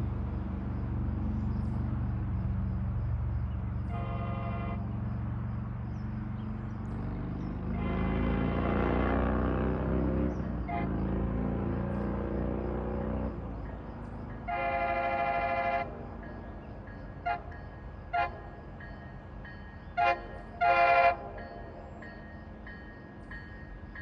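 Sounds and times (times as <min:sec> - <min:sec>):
diesel locomotive rumbling: 0:00.0 - 0:24.0
locomotive air horn: 0:03.8 - 0:05.0, 0:07.7 - 0:09.6, 0:10.7 - 0:11.2, 0:14.4 - 0:16.1, 0:17.2 - 0:18.6, 0:20.0 - 0:21.4.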